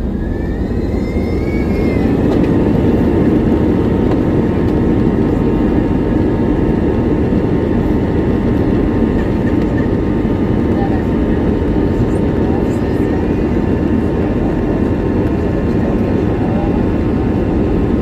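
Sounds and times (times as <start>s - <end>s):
faint rising whine: 0.0s - 3.7s
jet engines rumbling in cabin: 0.0s - 18.0s.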